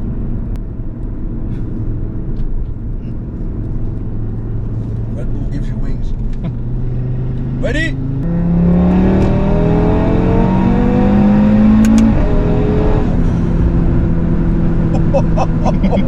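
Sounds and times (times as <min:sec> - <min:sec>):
car engine accelerating: 0:00.0 - 0:16.0
exhaust crackles: 0:11.8 - 0:16.0.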